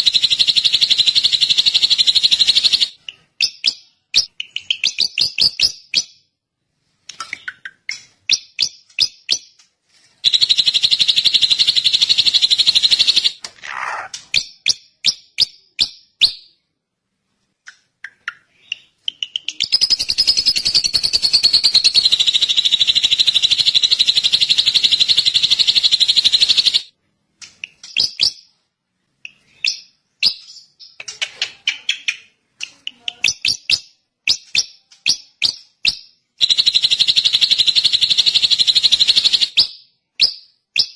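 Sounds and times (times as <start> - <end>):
bird rapid trills: 0.0 - 3.0, 10.2 - 14.2, 19.1 - 26.9, 36.4 - 39.6
bird chattering notes: 17.7 - 26.9.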